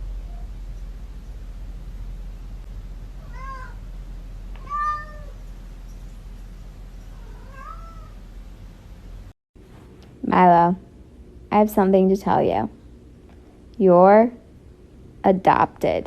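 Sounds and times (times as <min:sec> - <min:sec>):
cat meowing: 0:03.2 - 0:03.8, 0:04.6 - 0:05.4, 0:07.1 - 0:08.2.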